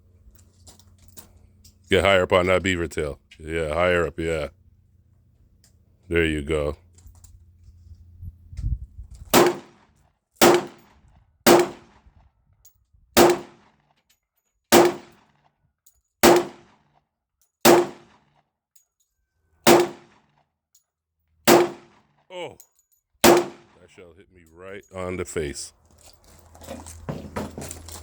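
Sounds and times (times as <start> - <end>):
pistol shots: 9.3 - 9.8, 10.4 - 10.9, 11.5 - 12.0, 13.2 - 13.7, 14.7 - 15.2, 16.2 - 16.7, 17.6 - 18.2, 19.6 - 20.2, 21.5 - 22.0, 23.2 - 23.8.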